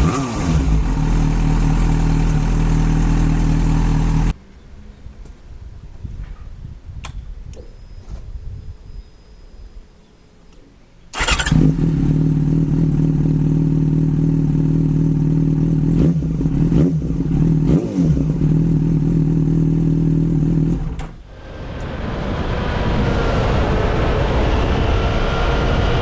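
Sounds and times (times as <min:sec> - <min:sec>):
motorcycle engine idling: 0:00.0 - 0:04.3, 0:11.2 - 0:21.3
rushing noise: 0:21.2 - 0:26.0.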